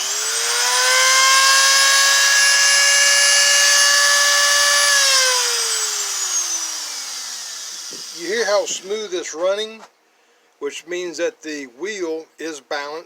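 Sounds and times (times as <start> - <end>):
electric grinder whine: 0.0 - 9.2.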